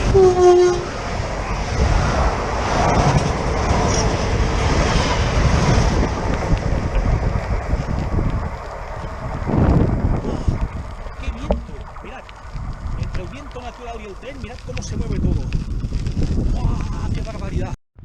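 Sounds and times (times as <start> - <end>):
train horn blast: 0.0 - 0.9
train rushing by: 0.0 - 10.1.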